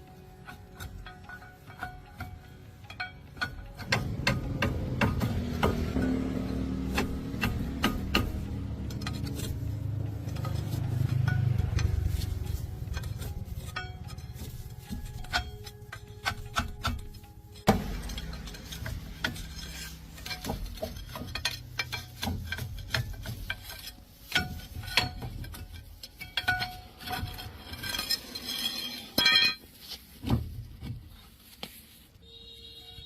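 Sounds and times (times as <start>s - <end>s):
metal tools clinking: 0.1s - 30.3s
low rumble: 3.9s - 15.6s.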